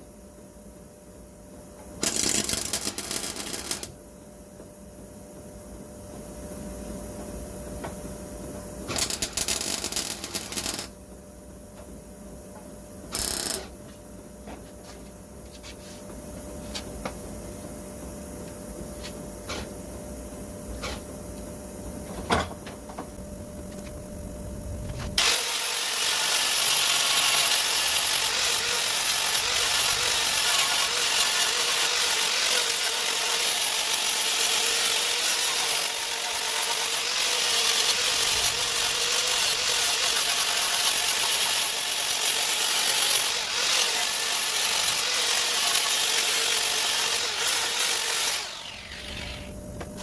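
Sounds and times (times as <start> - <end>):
power tool whining: 25.2 - 50.0.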